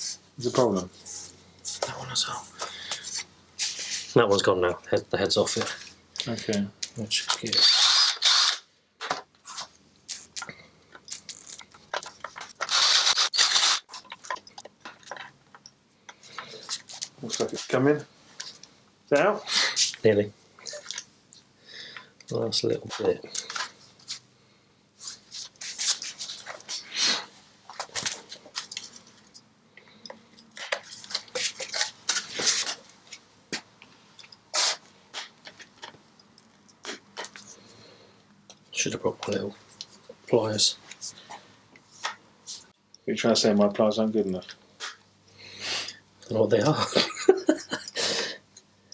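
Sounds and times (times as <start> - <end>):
hand tools clicking and scraping metal: 7.2 - 17.8, 30.0 - 33.2
rough grinding burst: 12.6 - 13.9.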